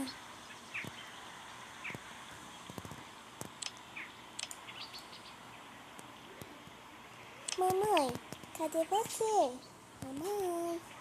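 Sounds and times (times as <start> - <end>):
faint bird chirps: 0.0 - 2.6, 3.9 - 6.6
background hiss: 0.0 - 11.0
light clicks: 4.4 - 4.6.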